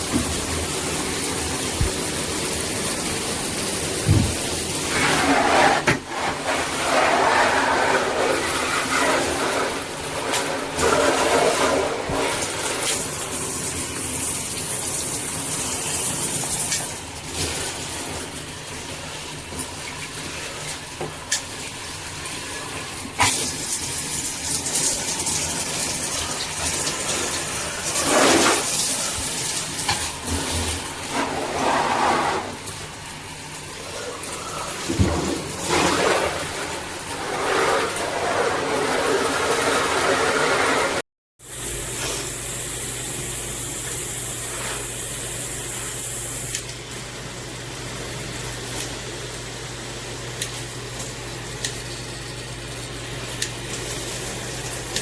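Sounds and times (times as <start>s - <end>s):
water spraying from shower head: 0.0s - 18.4s, 19.0s - 46.8s.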